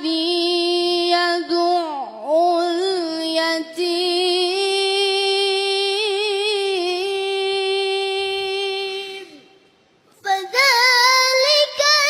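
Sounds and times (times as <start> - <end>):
person chanting recitation: 10.2 - 12.0.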